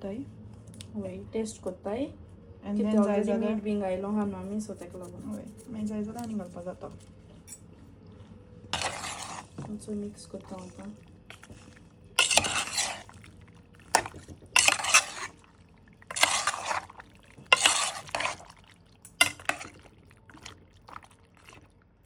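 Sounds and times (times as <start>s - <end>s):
spoon scraping a pot: 8.7s - 20.5s.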